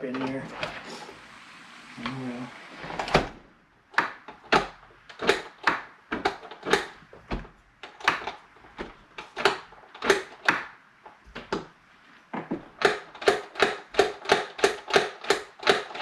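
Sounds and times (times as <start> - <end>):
knocks and clicks on a door lock: 3.1 - 11.7, 12.5 - 16.0.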